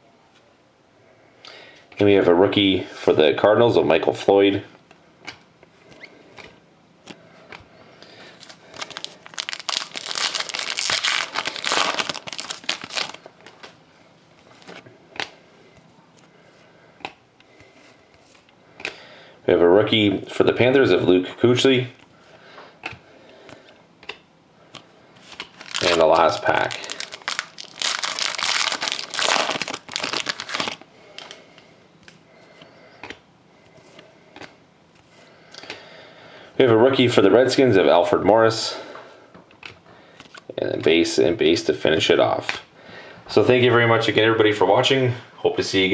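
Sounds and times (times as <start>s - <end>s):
foil wrapper crinkling and tearing: 8.4s - 13.3s, 25.4s - 31.4s.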